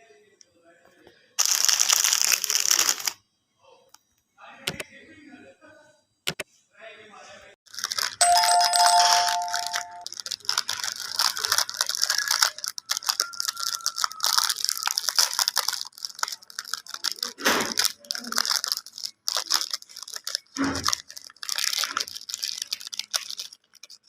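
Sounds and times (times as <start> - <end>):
plastic wrapper crinkling: 1.4 - 3.2, 7.7 - 24.0.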